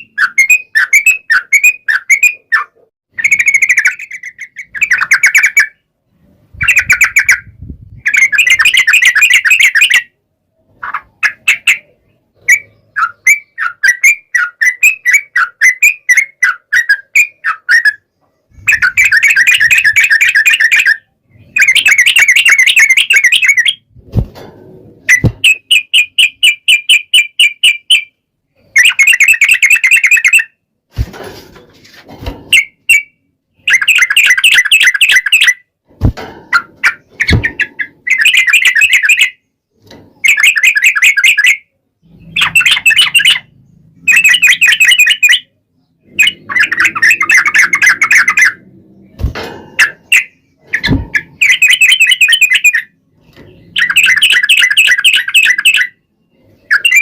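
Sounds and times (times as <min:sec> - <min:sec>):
bird chattering song: 0:00.0 - 0:23.9, 0:25.1 - 0:30.6, 0:32.5 - 0:35.7, 0:36.5 - 0:39.6, 0:40.2 - 0:49.1, 0:49.8 - 0:57.0
low thumps: 0:35.9 - 0:37.9.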